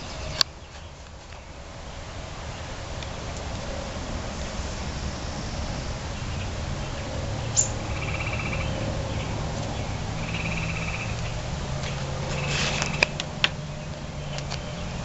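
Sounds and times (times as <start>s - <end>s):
swallow buzzy trilled calls: 5.6s - 11.4s.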